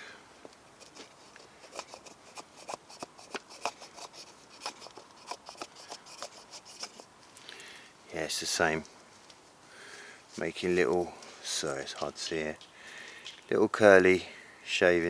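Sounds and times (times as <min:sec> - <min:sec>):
axe blade scraping wood: 0:00.8 - 0:07.1.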